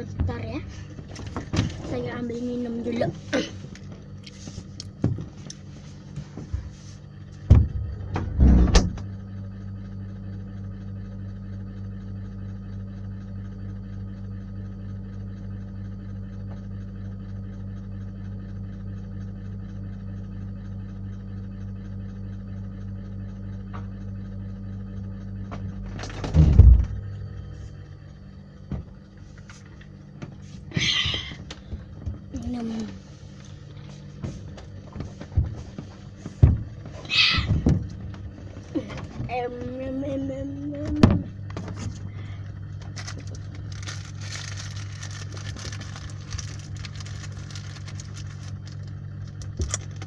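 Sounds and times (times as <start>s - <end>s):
low electrical hum: 0.0s - 50.0s
door-like thump: 7.5s - 9.1s, 26.2s - 27.0s.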